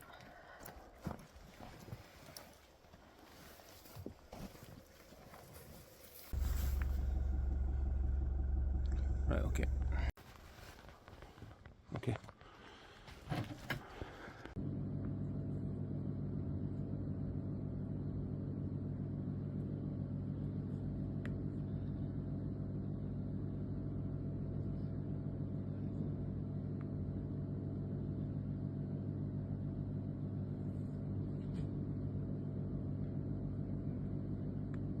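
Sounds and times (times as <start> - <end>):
vehicle engine rumbling: 3.7 - 10.2, 13.8 - 35.0.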